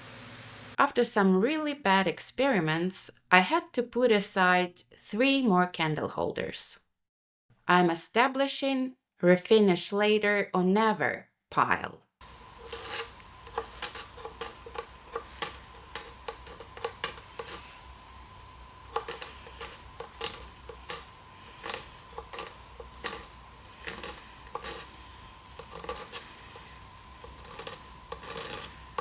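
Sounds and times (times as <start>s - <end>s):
faint high hum: 12.2s - 29.0s
small hard objects clicking: 12.2s - 29.0s.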